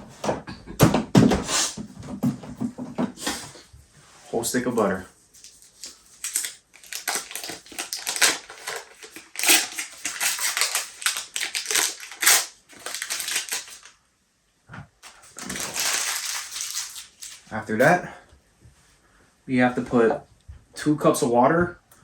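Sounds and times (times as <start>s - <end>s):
paper wrapper crinkling: 5.4s - 14.0s, 15.0s - 17.5s.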